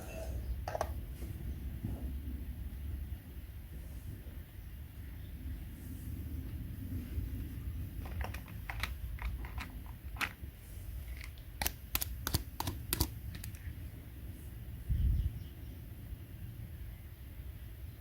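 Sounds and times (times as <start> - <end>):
quick clicks and taps: 11.2 - 13.7.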